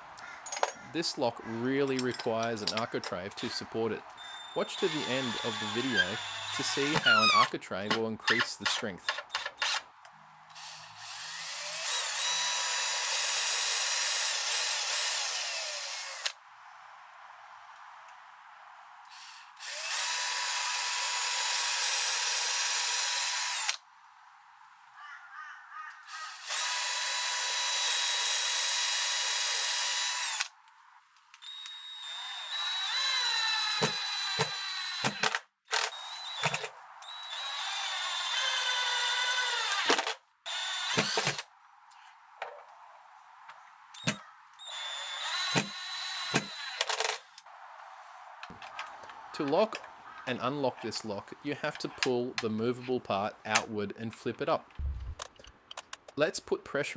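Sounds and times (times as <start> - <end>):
power drill whining: 4.2 - 7.5, 10.6 - 16.4, 19.1 - 23.8, 26.3 - 30.5, 31.4 - 41.4.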